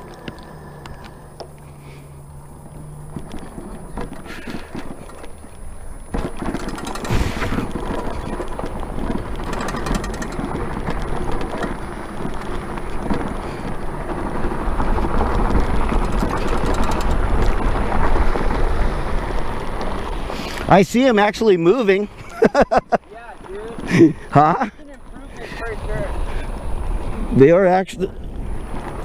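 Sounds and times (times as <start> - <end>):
bike knocks and rattles: 3.1 - 18.5.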